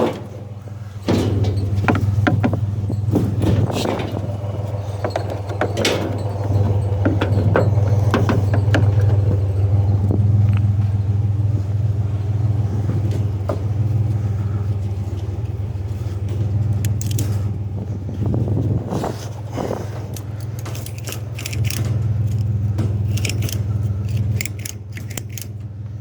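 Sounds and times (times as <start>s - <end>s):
metallic clicks and rattles: 0.0s - 10.8s, 15.2s - 17.7s, 19.9s - 26.0s
vehicle engine idling: 0.0s - 26.0s.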